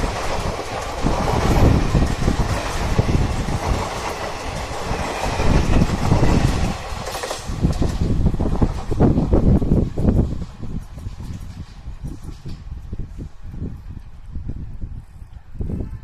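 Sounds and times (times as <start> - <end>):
wheels clattering over rail joints: 0.0 - 12.8
train passing at speed: 0.0 - 14.4.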